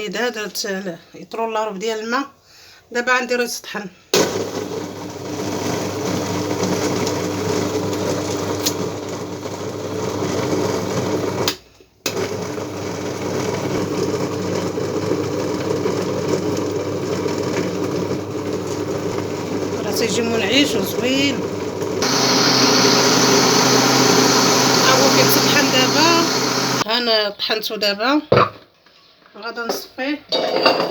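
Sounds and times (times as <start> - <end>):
electric blender running: 4.2 - 11.5, 12.1 - 26.8.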